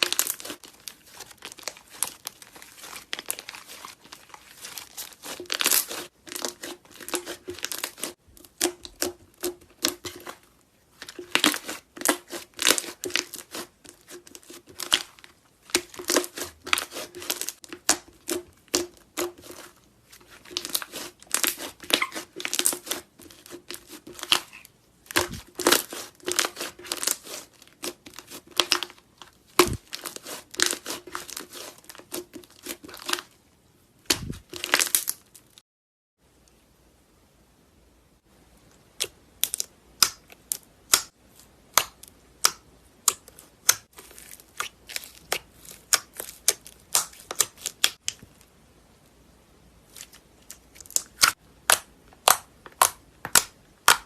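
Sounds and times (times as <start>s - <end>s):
slime squishing and crackling: 0.0s - 33.4s, 34.1s - 35.6s, 41.7s - 48.3s.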